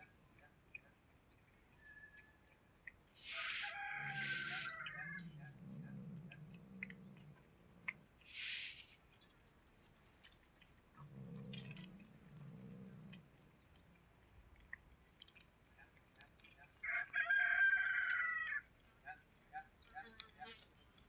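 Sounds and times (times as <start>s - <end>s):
rooster crowing: 3.3s - 5.3s, 16.8s - 18.6s.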